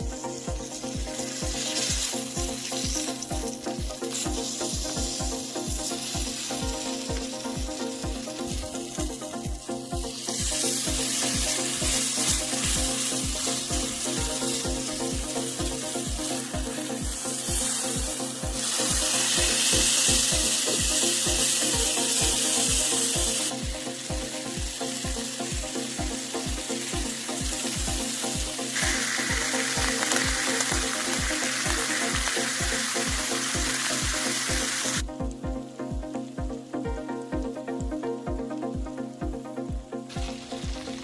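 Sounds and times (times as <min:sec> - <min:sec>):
background music with beat: 0:00.0 - 0:41.0
food sizzling: 0:00.0 - 0:41.0.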